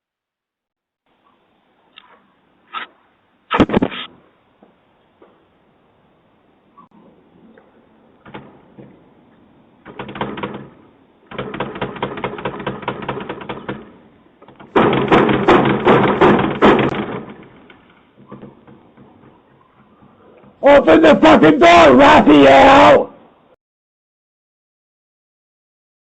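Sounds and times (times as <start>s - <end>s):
heavy pounding on a door: 9.9s - 19.4s.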